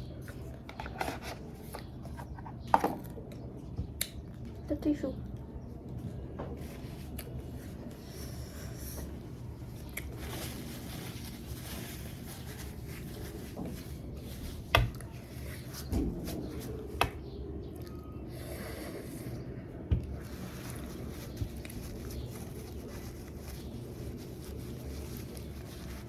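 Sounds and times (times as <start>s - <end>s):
tissue rustling: 9.7s - 17.0s, 20.2s - 26.0s.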